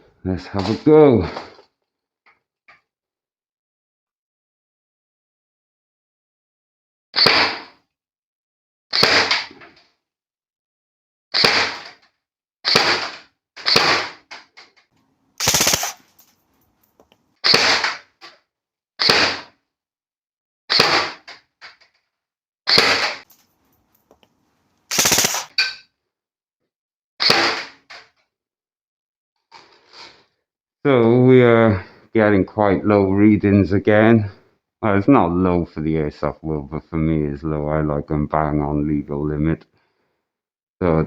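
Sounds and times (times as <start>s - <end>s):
airsoft rifle shots: 7.2s - 7.8s, 8.9s - 9.6s, 11.4s - 11.9s, 12.7s - 14.3s, 15.4s - 16.1s, 17.4s - 18.1s, 19.0s - 19.6s, 20.7s - 21.3s, 22.7s - 23.3s, 24.9s - 25.6s, 27.2s - 27.8s.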